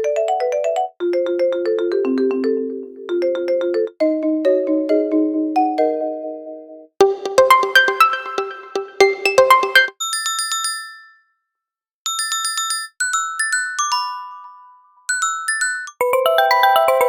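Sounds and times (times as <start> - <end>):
electronic phone ringtone: 7.3 - 10.0, 16.0 - 17.0
lower phone ringtone: 16.0 - 17.0.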